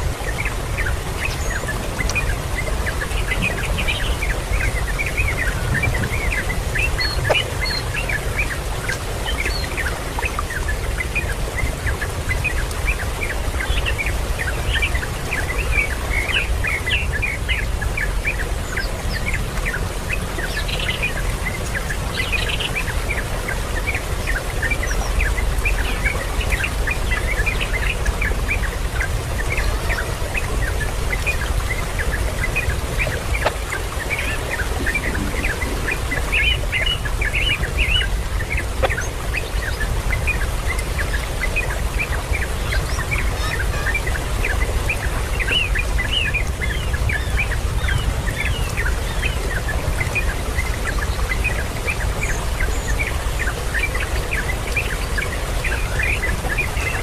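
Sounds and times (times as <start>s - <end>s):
birds chirping: 0.0s - 57.0s
steady low rumble: 30.5s - 40.3s.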